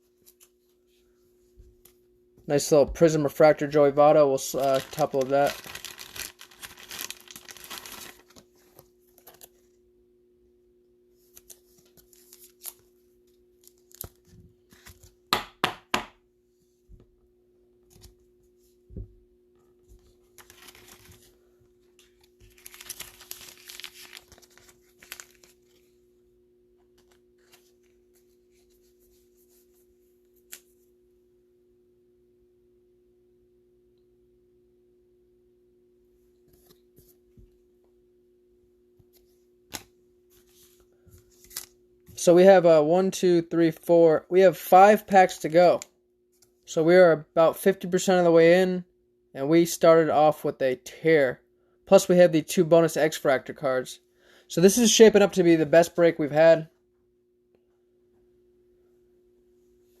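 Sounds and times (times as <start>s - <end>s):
faint steady hum: 0.0s - 60.0s
crinkly plastic rustling: 4.4s - 9.7s, 20.0s - 26.0s.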